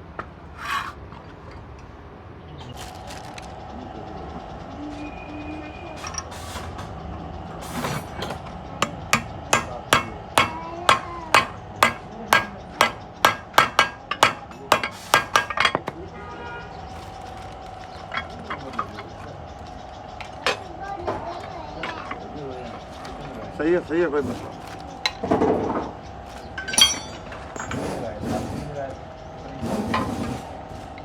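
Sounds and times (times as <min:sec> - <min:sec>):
hammer blows: 0:07.6 - 0:16.0.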